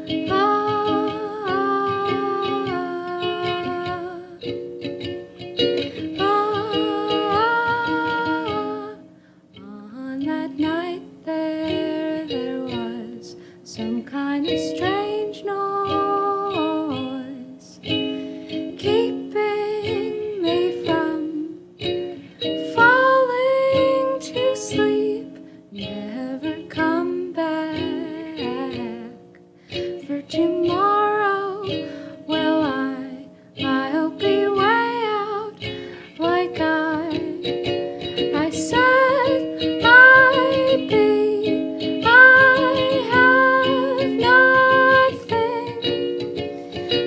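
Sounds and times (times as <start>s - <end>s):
ukulele strummed: 0.0s - 47.0s
sliding bending melody line: 36.2s - 47.0s.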